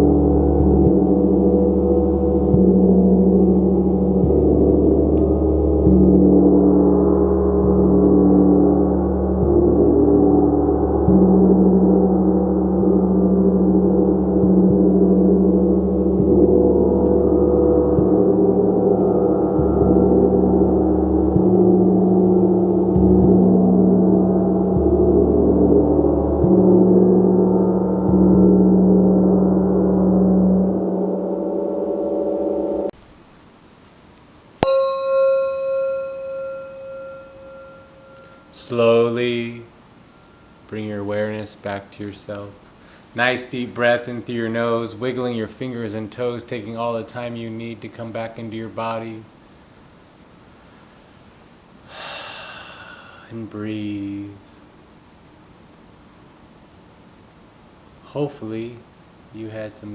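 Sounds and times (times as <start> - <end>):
gong ringing: 34.6 - 40.6.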